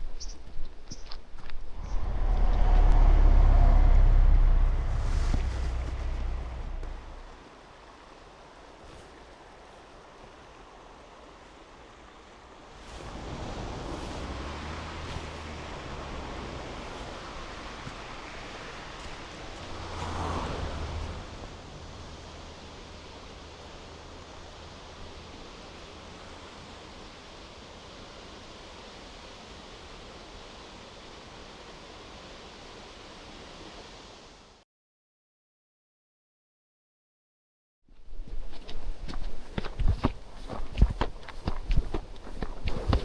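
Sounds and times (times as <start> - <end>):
water rushing over rocks: 12.7 - 32.2.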